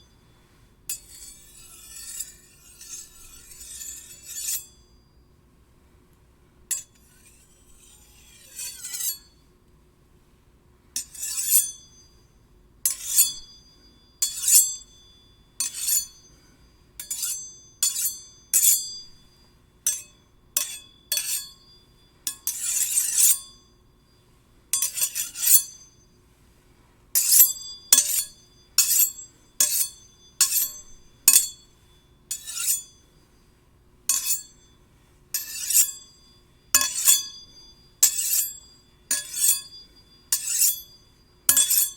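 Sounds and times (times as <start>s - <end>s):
steel blades clinking: 0.9s - 4.8s, 15.6s - 16.3s, 17.0s - 19.1s, 19.9s - 21.6s, 22.3s - 23.5s, 24.8s - 26.0s, 27.2s - 31.7s, 32.3s - 33.0s, 34.1s - 34.7s, 35.4s - 36.2s, 36.8s - 41.9s.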